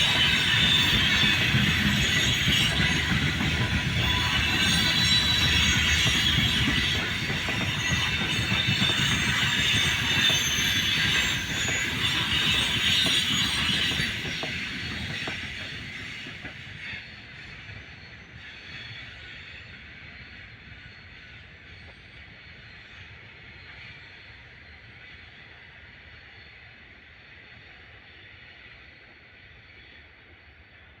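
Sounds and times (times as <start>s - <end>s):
freight train rolling on rails: 0.0s - 31.0s
train wheel squeal: 0.0s - 31.0s.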